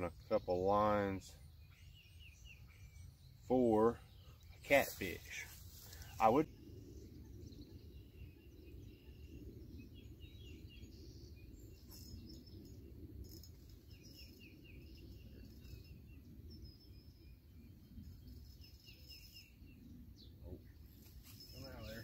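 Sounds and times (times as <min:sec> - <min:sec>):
small birds chirping: 0:00.0 - 0:22.0
steady low rumble: 0:02.7 - 0:18.6.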